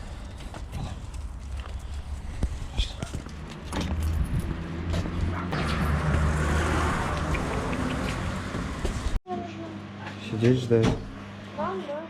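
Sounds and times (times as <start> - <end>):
car passing: 3.9 - 9.2.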